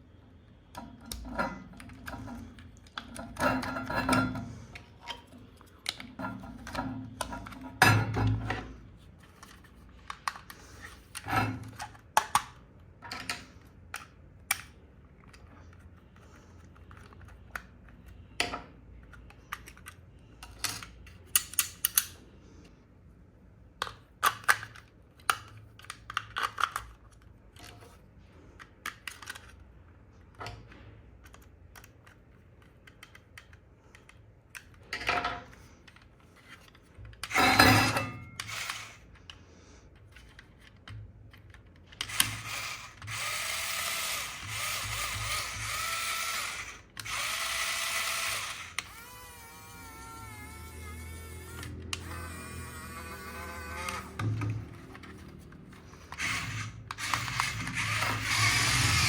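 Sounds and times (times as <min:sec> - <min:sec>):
hands handling plastic and cardboard: 0:04.5 - 0:22.0, 0:38.4 - 0:43.1, 0:54.1 - 0:57.9.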